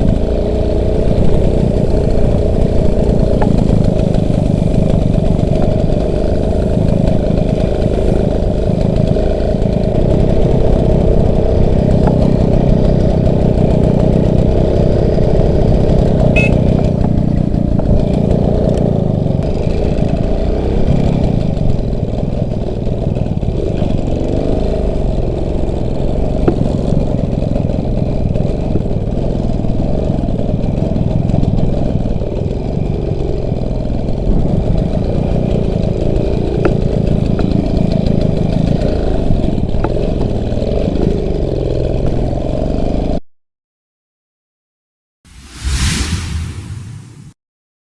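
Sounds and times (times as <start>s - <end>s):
motorcycle engine revving: 0.0s - 43.2s.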